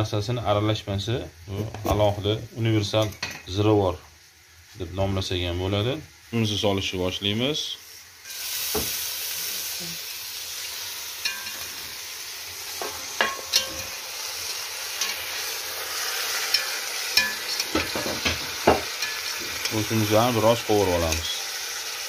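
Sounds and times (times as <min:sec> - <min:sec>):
food sizzling in hot oil: 0:00.4 - 0:22.0
utensil clinking against pot: 0:11.2 - 0:11.6, 0:12.8 - 0:14.0, 0:16.4 - 0:19.8.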